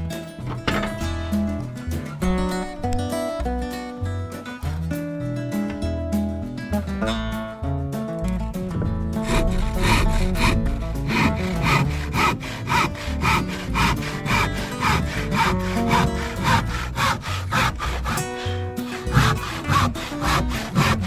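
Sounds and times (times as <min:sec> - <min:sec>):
hand saw cutting wood: 0:00.0 - 0:01.2, 0:02.0 - 0:03.0, 0:09.2 - 0:21.0
acoustic guitar music: 0:00.0 - 0:21.0.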